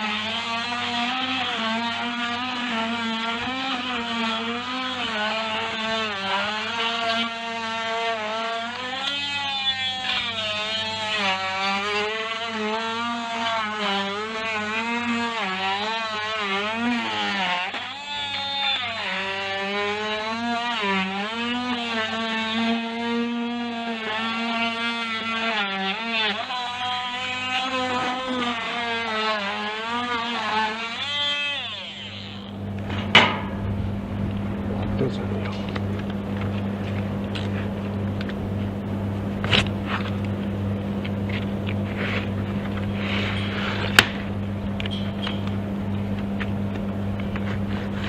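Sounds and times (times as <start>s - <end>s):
electric power tool cutting: 0.0s - 33.5s, 39.4s - 48.0s
steady low hum: 31.9s - 48.0s
sharp knock: 33.0s - 33.6s.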